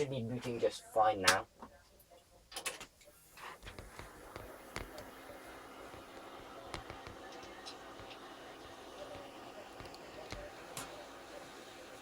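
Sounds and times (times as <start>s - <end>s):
computer fans whirring: 3.3s - 12.0s.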